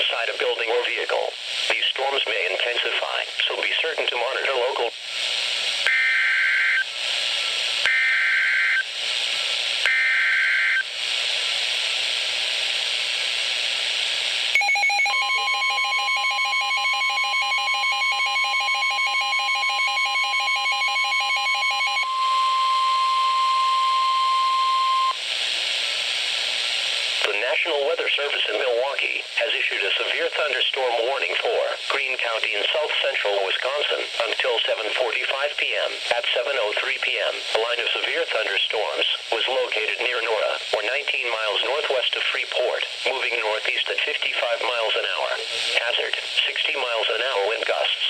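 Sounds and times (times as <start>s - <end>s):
radio hiss: 0.0s - 20.7s, 21.9s - 48.0s
rapidly pulsing electronic alarm: 14.6s - 25.2s
steady warning alarm tone: 14.6s - 25.2s.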